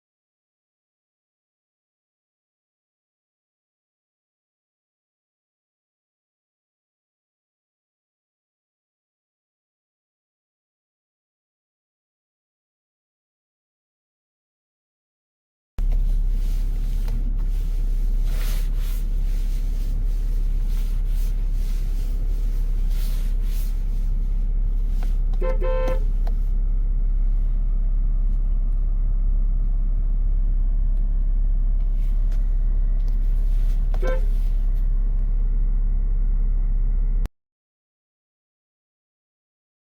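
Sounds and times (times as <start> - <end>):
steady low rumble: 15.8 - 37.3
car horn toots: 25.1 - 26.4, 33.8 - 34.5.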